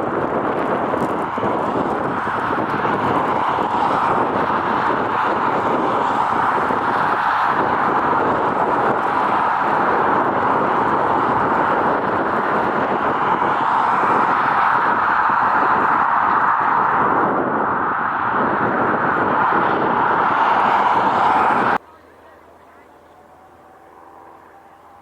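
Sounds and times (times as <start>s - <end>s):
jet engines running: 0.0s - 21.8s.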